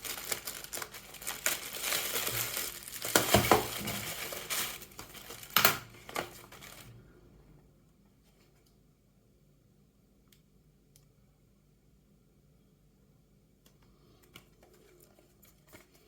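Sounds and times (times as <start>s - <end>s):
packaging crinkling and rustling: 0.0s - 7.0s.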